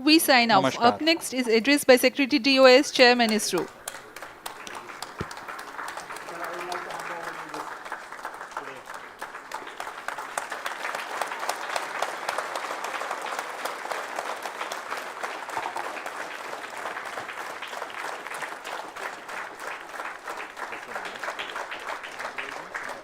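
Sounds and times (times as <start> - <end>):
voices: 0.0 - 7.8
crowd applauding: 3.0 - 23.0.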